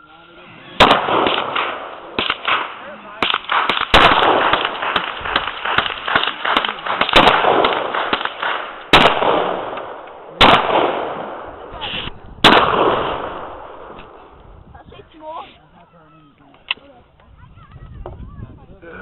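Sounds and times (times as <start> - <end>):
rifle shots with echo: 0.8 - 11.8, 12.4 - 14.3.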